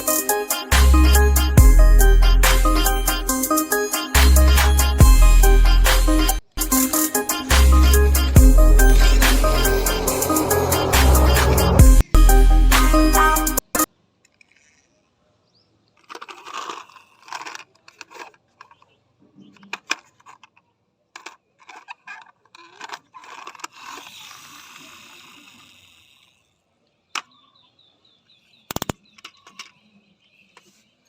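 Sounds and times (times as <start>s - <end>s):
toys clicking and tapping: 16.0s - 26.4s, 28.7s - 29.9s.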